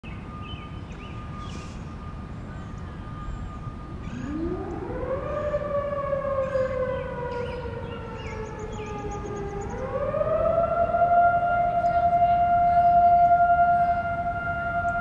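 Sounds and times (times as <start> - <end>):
faint steady siren tone: 0.0 - 15.0
tornado siren wailing: 0.0 - 15.0.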